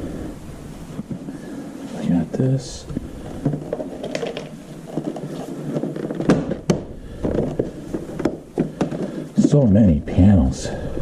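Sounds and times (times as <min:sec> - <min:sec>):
plastic panels scraping: 0:02.8 - 0:09.8.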